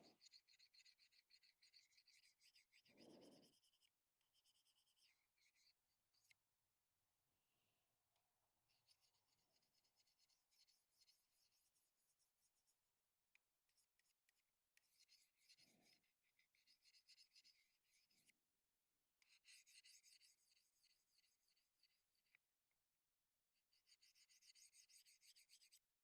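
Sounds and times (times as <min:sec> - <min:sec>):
faint scratchy rubbing: 0:02.9 - 0:03.8.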